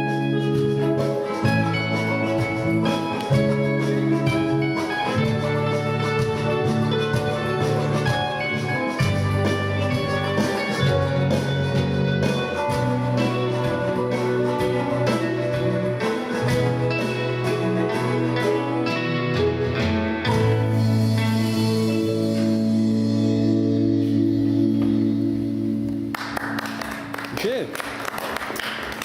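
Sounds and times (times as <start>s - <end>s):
live band playing guitar chords: 0.0s - 29.0s.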